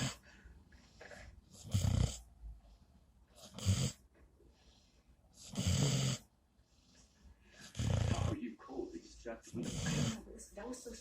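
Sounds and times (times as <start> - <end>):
loud snoring: 1.6 - 2.2, 3.4 - 4.0, 5.4 - 6.3, 7.6 - 8.4, 9.5 - 10.2.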